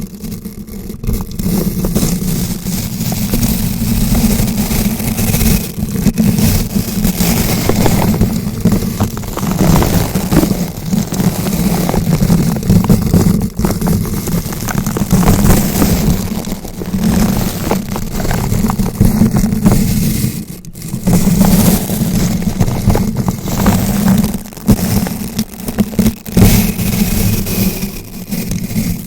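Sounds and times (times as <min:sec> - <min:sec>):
microphone rubbing rumble: 0:00.0 - 0:29.0.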